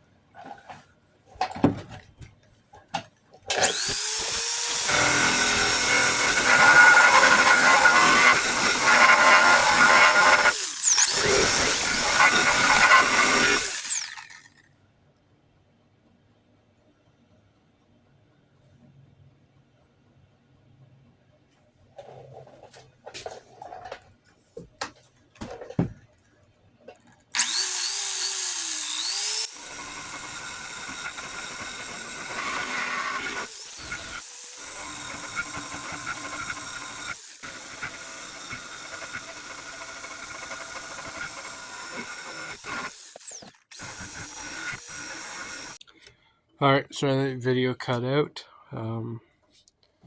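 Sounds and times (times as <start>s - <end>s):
power sander whining: 3.5s - 14.5s, 27.4s - 45.8s.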